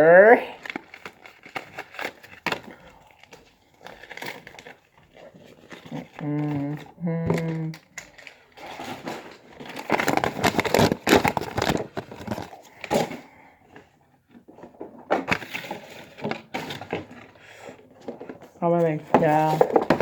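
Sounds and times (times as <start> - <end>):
plastic and cardboard crinkling: 0.0 - 20.0.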